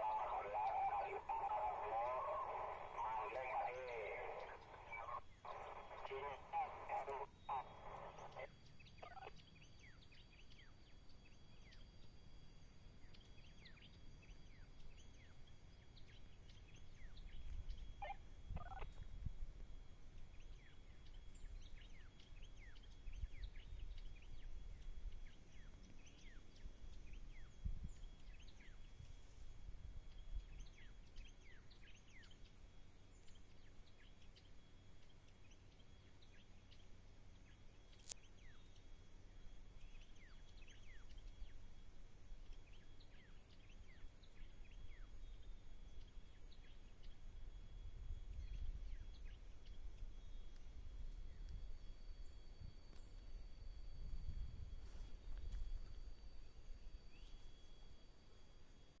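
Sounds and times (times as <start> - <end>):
birds chirping: 0.0 - 29.0.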